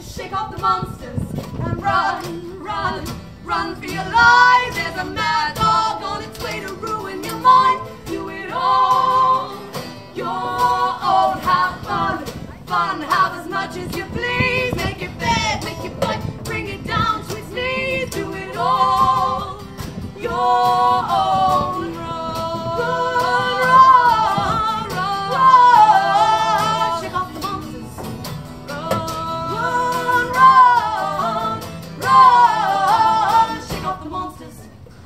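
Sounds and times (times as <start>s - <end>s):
women singing wordless long notes: 0.0s - 35.0s.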